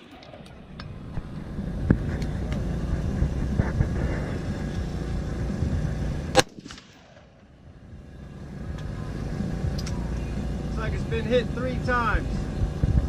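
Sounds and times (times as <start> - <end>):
low rumble: 0.0 - 13.0
rifle shot: 6.3 - 7.6.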